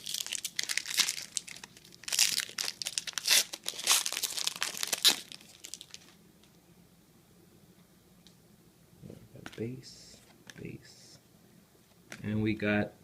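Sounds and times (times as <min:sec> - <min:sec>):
wrapper crinkling and tearing: 0:00.0 - 0:06.2.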